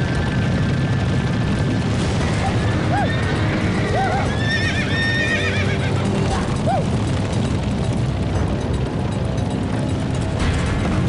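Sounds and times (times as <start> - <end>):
rumble of galloping hooves: 0.0 - 11.0
horses neighing: 2.2 - 7.0.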